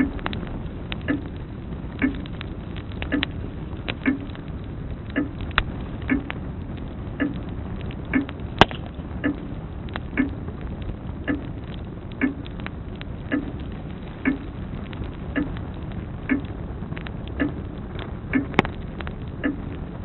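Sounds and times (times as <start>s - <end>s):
wood fire crackling: 0.0s - 20.0s
grandfather clock ticking: 1.1s - 1.3s, 2.0s - 2.3s, 3.1s - 3.3s, 4.0s - 4.4s, 5.1s - 5.4s, 6.1s - 6.3s, 7.2s - 7.4s, 8.1s - 8.4s, 9.2s - 9.4s, 10.2s - 10.4s, 11.3s - 11.5s, 12.2s - 12.5s, 13.3s - 13.6s, 14.2s - 14.5s, 16.3s - 16.5s, 17.4s - 17.6s, 18.3s - 18.6s
loud pop from fire: 7.8s - 9.2s.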